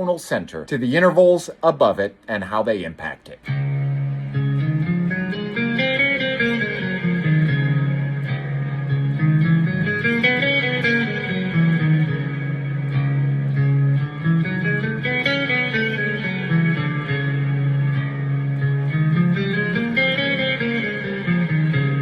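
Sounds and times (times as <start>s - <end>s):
electric guitar scale notes: 0.8s - 22.0s
low guitar drone: 3.4s - 22.0s.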